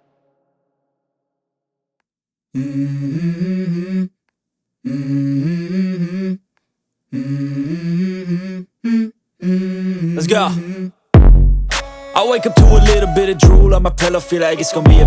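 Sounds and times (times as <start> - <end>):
held vocal chord: 9.5 - 10.9, 11.8 - 15.0.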